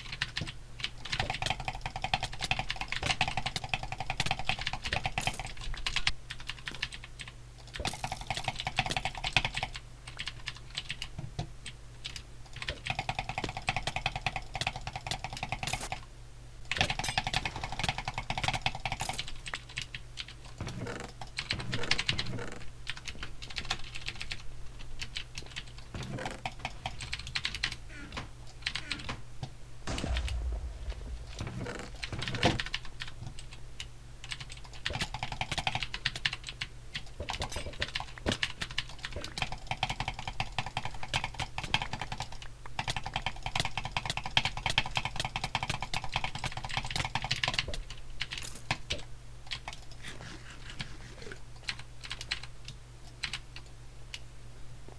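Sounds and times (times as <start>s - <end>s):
steady low hum: 29.9s - 33.5s.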